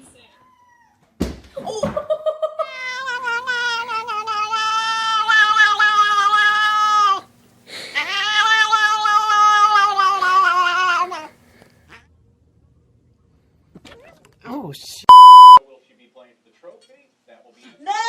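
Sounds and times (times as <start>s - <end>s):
cat yowling: 2.6s - 7.3s, 7.9s - 11.4s.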